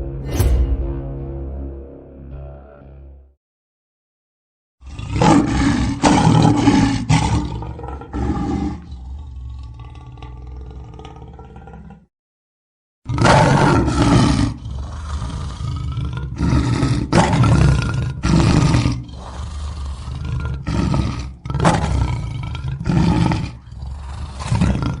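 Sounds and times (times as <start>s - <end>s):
lion roaring: 4.8s - 12.1s, 13.1s - 25.0s
lion grunting: 13.1s - 25.0s.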